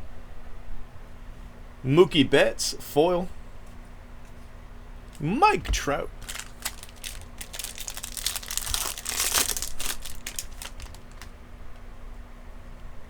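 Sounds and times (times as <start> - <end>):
foil wrapper crinkling: 5.6 - 11.4.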